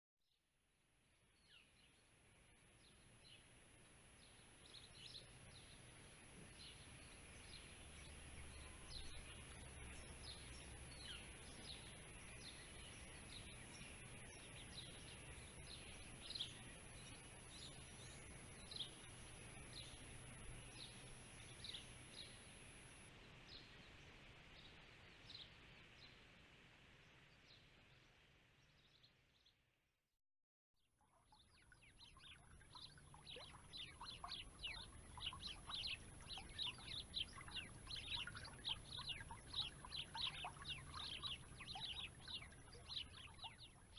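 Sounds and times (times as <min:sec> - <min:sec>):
steady outdoor hiss: 0:00.8 - 0:29.5, 0:31.6 - 0:43.9
small birds chirping: 0:04.2 - 0:26.2, 0:31.2 - 0:43.9.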